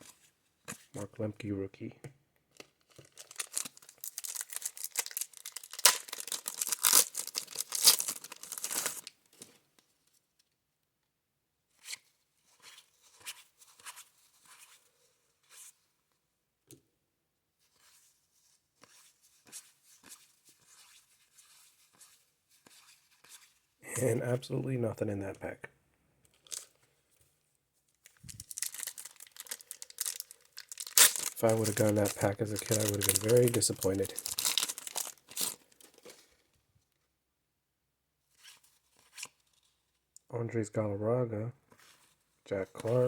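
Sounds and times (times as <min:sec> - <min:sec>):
plastic wrapper crinkling: 0:02.5 - 0:09.1, 0:26.3 - 0:26.8, 0:28.0 - 0:36.4.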